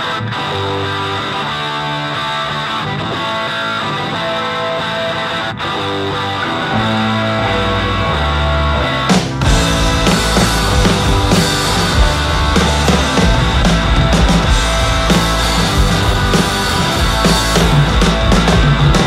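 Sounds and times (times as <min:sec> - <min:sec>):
instrumental guitar: 0:00.0 - 0:19.0
heavy bass: 0:06.5 - 0:19.0.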